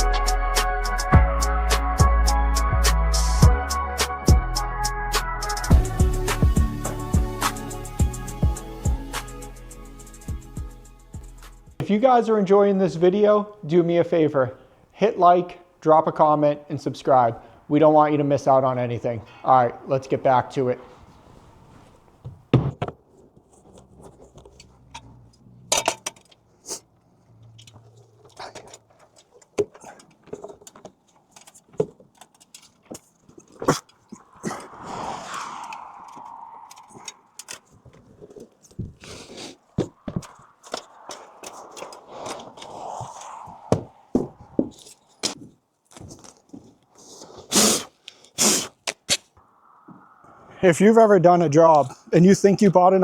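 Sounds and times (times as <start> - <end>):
knocks clicks and scrapes: 22.7 - 34.7, 35.7 - 46.8
loud short ripping noises: 47.2 - 49.4.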